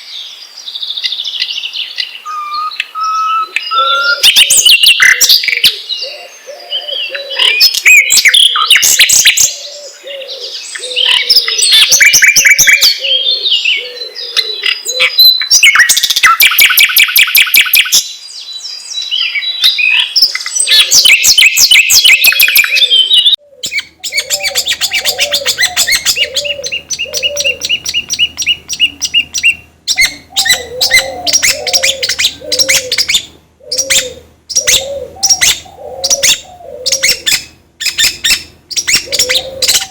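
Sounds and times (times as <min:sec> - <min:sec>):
songbirds trilling and chirping: 0:00.0 - 0:39.9
low dove-like cooing: 0:02.3 - 0:15.3, 0:22.3 - 0:39.9.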